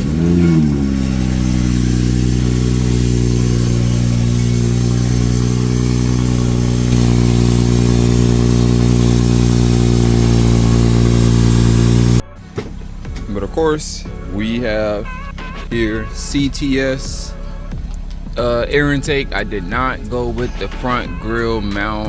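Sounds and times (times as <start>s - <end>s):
car engine fast idle: 0.0s - 22.0s.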